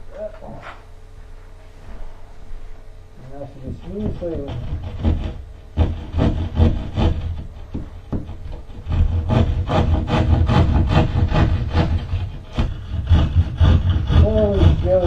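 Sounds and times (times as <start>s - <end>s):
hand tool rasping drywall: 3.6s - 15.0s.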